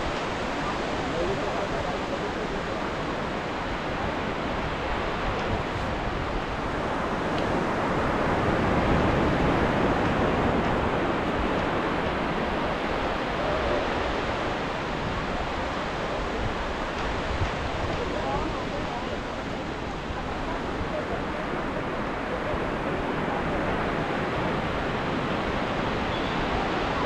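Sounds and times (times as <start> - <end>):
ocean waves breaking: 0.0 - 27.0.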